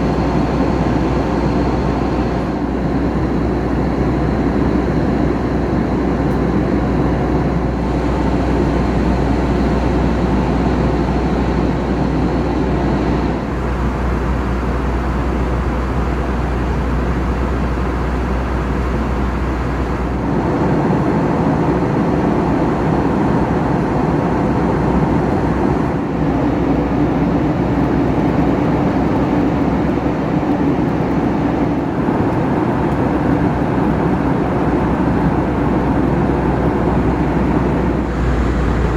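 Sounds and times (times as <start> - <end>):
rush of air in aircraft cabin: 0.0 - 30.0, 31.8 - 38.9
low engine hum: 0.0 - 38.9.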